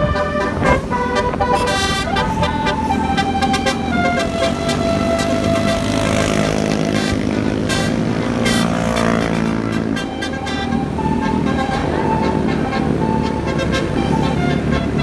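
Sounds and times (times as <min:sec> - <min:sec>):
bus engine running: 0:00.0 - 0:15.0
multi-tone air horn melody: 0:00.0 - 0:15.0.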